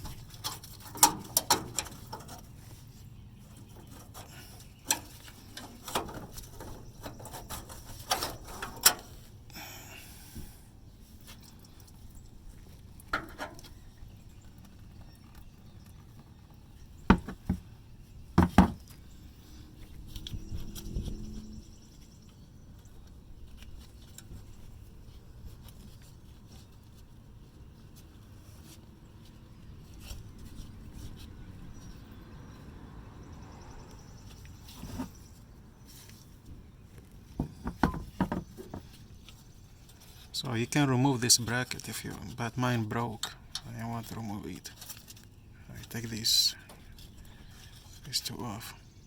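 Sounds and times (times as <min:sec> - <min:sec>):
scraping rustle: 0:00.0 - 0:09.5, 0:34.1 - 0:48.8.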